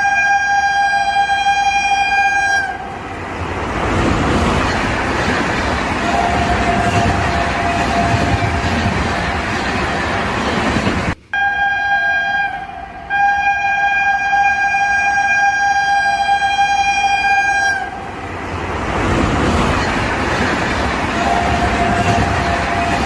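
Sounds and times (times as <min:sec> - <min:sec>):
train horn blasts: 0:00.0 - 0:03.0, 0:06.0 - 0:09.0, 0:11.3 - 0:18.0, 0:21.1 - 0:23.0
train rushing past: 0:00.0 - 0:23.0.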